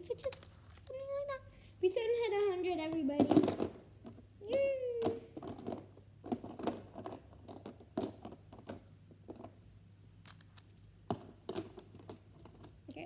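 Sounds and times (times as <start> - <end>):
plastic toys clicking and tapping: 0.0 - 1.0, 10.3 - 13.0
plastic toys rattling: 0.0 - 1.1, 10.2 - 10.8.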